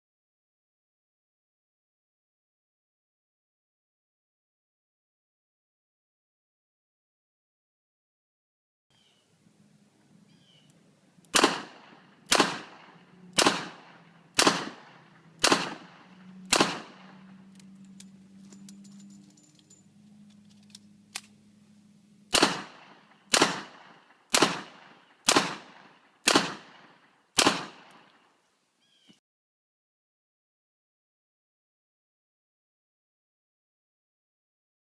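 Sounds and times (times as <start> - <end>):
reload clicks and rattles: 17.5 - 21.4.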